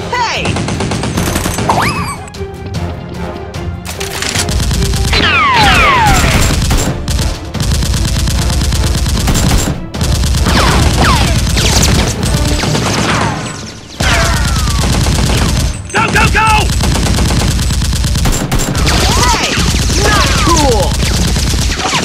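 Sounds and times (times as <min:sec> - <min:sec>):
background music: 0:00.0 - 0:22.0
automatic gunfire: 0:04.4 - 0:13.3, 0:14.0 - 0:22.0.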